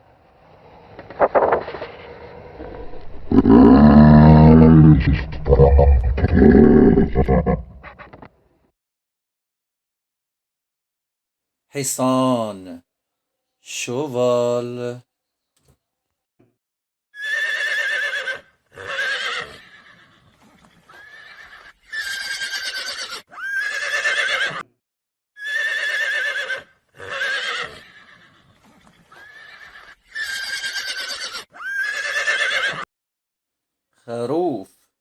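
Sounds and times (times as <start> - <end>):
horse whinnying: 2.6 - 8.0, 17.2 - 24.7, 25.4 - 32.9.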